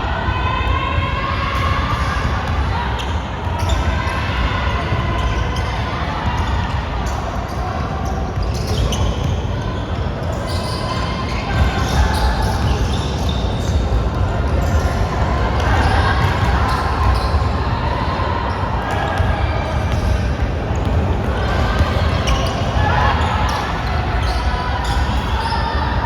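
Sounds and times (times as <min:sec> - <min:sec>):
players calling out: 0:00.1 - 0:26.0
basketball bouncing on court: 0:19.2 - 0:22.8.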